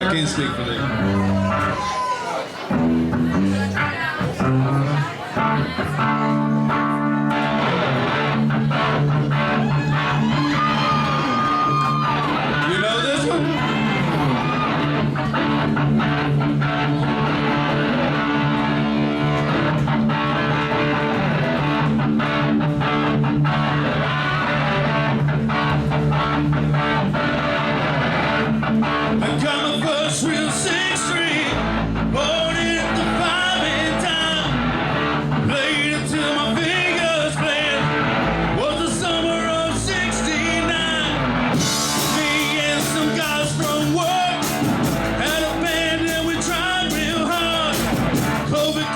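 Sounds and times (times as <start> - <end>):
live rock band playing: 0.0 - 48.9
person singing: 29.2 - 34.6, 35.4 - 48.9.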